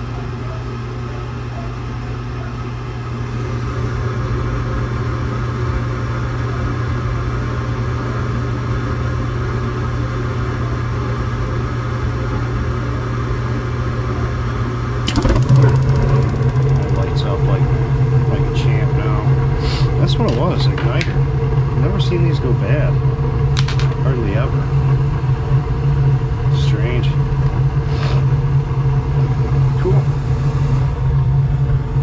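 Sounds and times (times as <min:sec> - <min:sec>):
rapid clicking: 0:15.1 - 0:17.8
gas furnace humming: 0:15.1 - 0:21.1.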